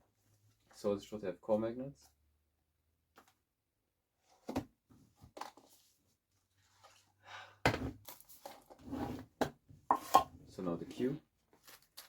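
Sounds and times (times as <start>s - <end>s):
packaging rustling: 11.6s - 12.0s.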